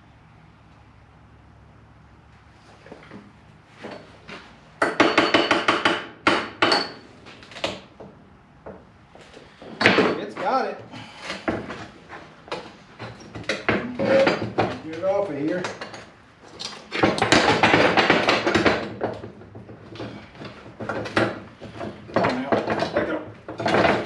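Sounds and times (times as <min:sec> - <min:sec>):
metal tools clanking and scraping: 0:09.6 - 0:24.0.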